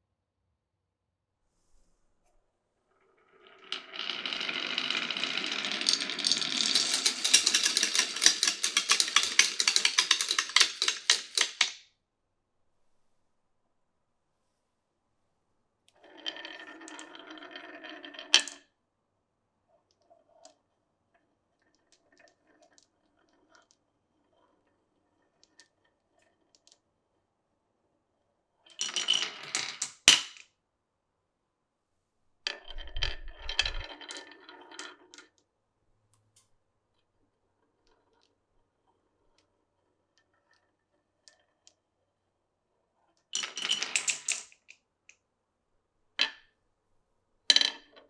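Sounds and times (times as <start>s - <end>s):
marbles rolling and clattering: 3.3s - 11.8s, 16.0s - 18.6s, 28.7s - 30.4s, 32.5s - 35.3s, 43.4s - 44.7s, 47.5s - 48.0s.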